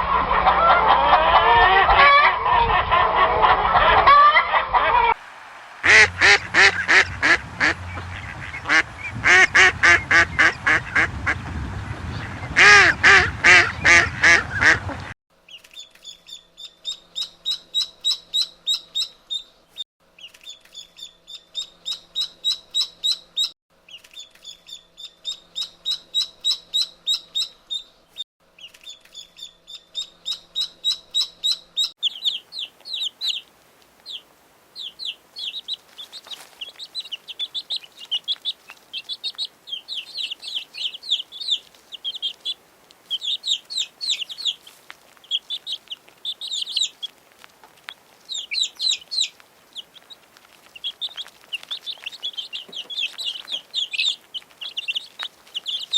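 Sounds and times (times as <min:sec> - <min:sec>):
waterfowl quacking and honking: 0:00.0 - 0:05.2, 0:05.8 - 0:15.1.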